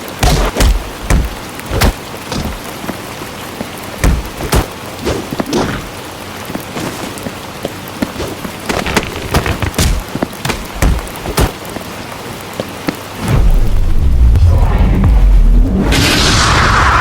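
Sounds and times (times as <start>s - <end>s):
sharp hits and knocks: 0.2s - 2.7s, 4.0s - 4.8s, 8.2s - 11.6s
heavy low thumps: 13.3s - 15.8s.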